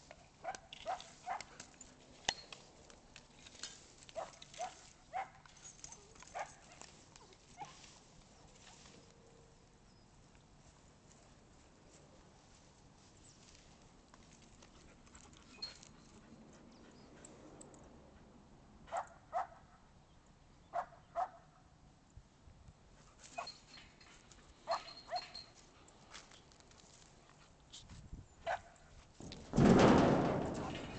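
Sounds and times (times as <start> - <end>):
dog yipping: 0.4 - 1.6, 4.2 - 6.9, 7.6 - 7.9, 23.3 - 23.7, 24.7 - 25.5.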